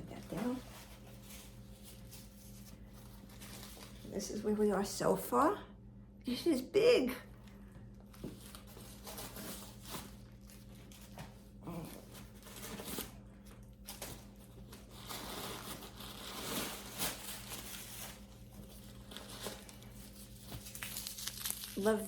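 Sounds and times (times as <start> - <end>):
packing stuffing crinkling: 8.4 - 22.0.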